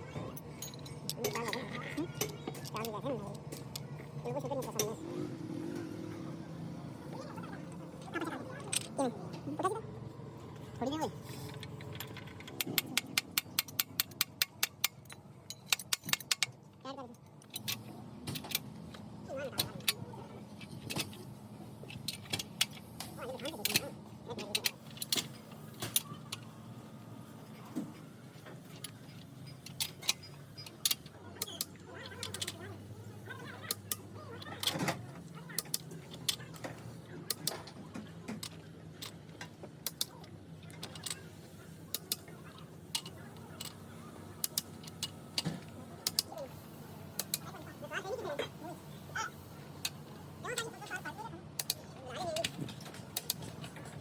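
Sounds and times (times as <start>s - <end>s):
metal tools clinking: 0.1s - 3.8s, 11.4s - 16.6s.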